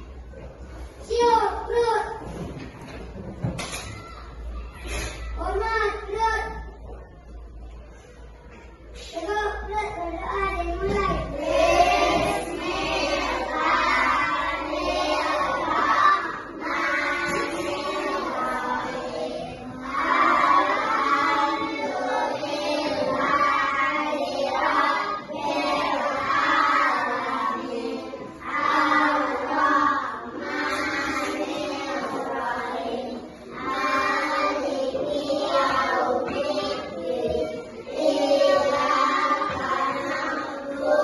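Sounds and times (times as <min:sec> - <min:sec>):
children singing in unison: 0:10.0 - 0:41.0.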